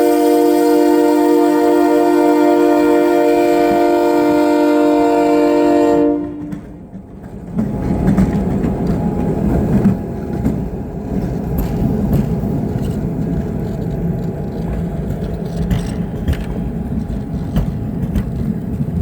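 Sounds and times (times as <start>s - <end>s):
locomotive air horn: 0.0s - 6.8s
train rumbling past: 0.0s - 19.0s
wheels clicking over rails: 6.4s - 19.0s.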